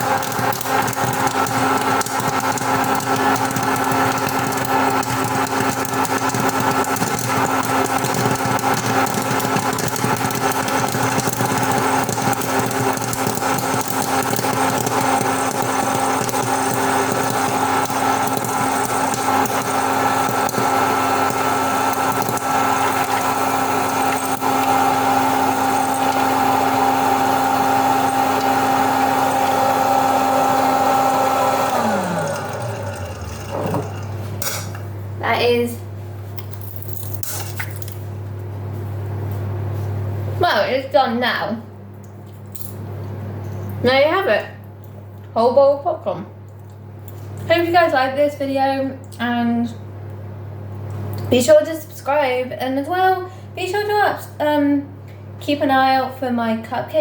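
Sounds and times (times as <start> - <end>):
popcorn kernels popping: 0.0 - 34.8
popcorn machine motor whining: 0.0 - 34.8.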